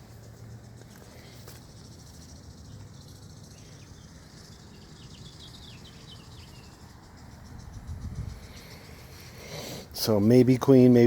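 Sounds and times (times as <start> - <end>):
high pulsing insect trill: 0.0 - 11.0
bird chirps: 1.2 - 9.6.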